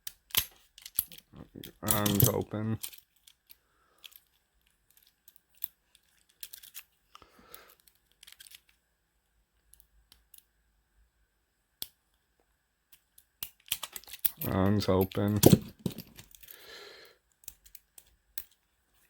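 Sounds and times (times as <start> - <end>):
lock picks clicking in padlock: 0.0 - 6.9, 7.7 - 8.8, 12.9 - 16.6, 17.3 - 18.6.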